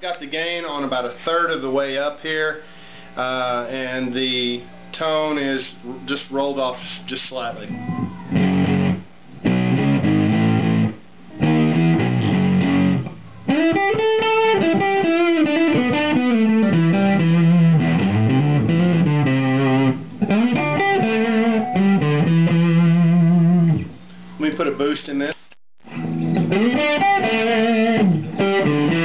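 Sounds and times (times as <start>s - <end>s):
fuzzed electric guitar lead: 7.6s - 24.4s, 25.8s - 29.0s.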